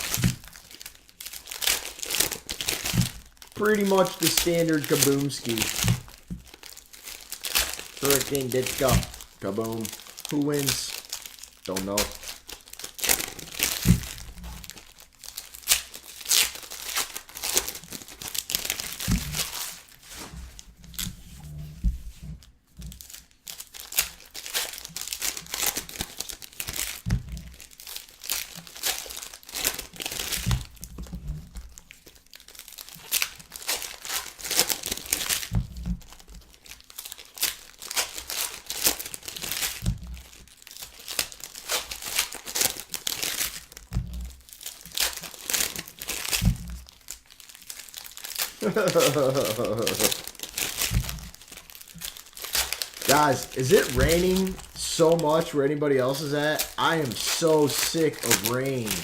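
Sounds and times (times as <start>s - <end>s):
card pack wrappers tearing: 0.0s - 21.7s, 22.3s - 59.0s.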